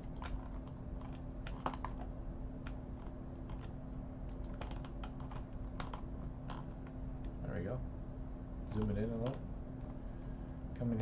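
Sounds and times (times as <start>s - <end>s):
keyboard keys clicking: 0.0s - 2.8s, 3.4s - 7.4s
steady low hum: 0.0s - 11.0s.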